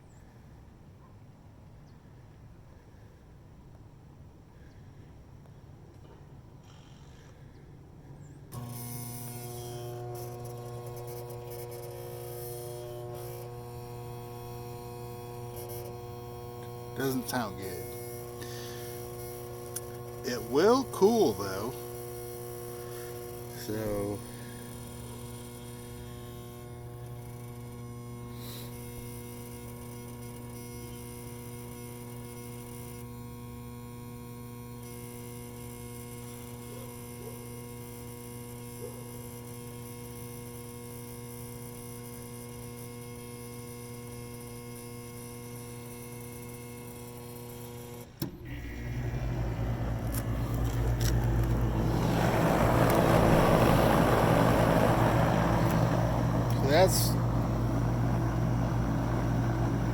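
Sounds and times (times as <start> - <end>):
electrical hum of heating unit: 3.5 - 59.9
rising rushing noise: 50.3 - 58.3.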